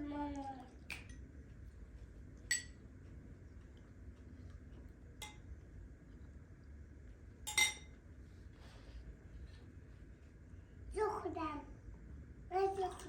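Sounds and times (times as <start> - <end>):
metal utensils clinking: 7.5 - 7.9.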